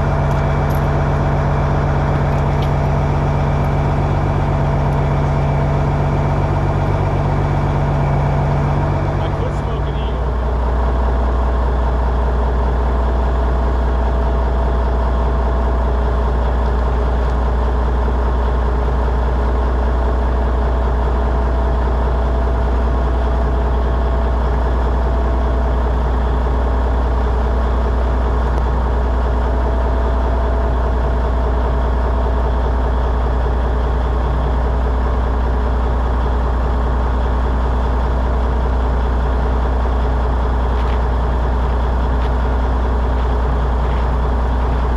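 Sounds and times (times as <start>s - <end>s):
large engine idling: 0.0s - 44.9s.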